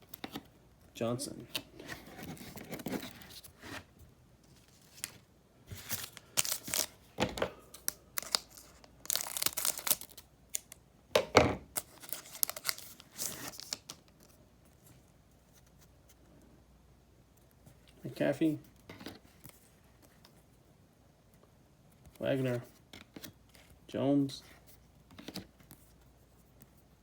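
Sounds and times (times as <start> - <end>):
card pack wrapper tearing: 5.8 - 7.1, 7.8 - 10.8, 11.7 - 14.0.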